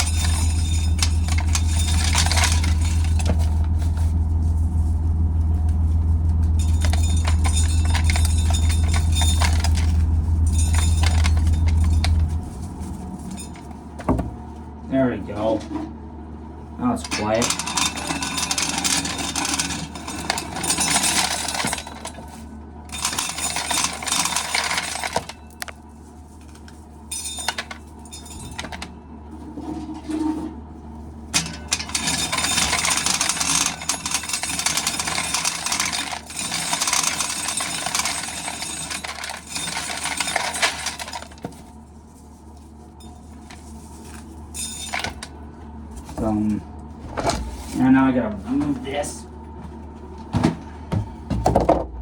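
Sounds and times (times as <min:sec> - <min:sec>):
corn kernels rattling into pail: 0:00.0 - 0:04.2, 0:06.4 - 0:12.4.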